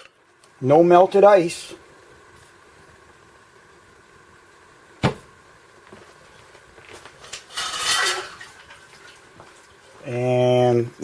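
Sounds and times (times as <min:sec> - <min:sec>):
clattering scrape of metal: 0:07.2 - 0:08.5.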